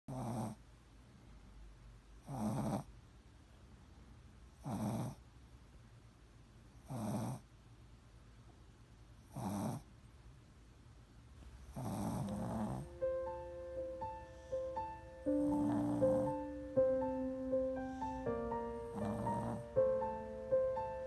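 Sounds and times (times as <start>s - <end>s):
dog snoring: 0.1s - 0.6s, 2.2s - 2.9s, 4.6s - 5.2s, 6.8s - 7.5s, 9.2s - 9.9s, 11.7s - 13.0s, 15.3s - 16.5s, 18.9s - 19.8s.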